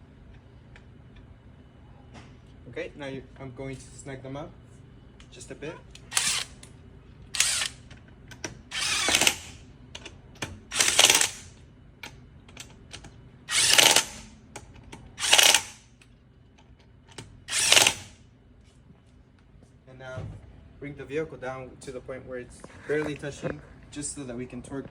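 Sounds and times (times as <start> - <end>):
impact wrench bursts: 6.0 - 6.6, 7.4 - 7.8, 8.7 - 9.6, 10.6 - 11.6, 13.5 - 14.3, 15.2 - 15.9, 17.5 - 18.2.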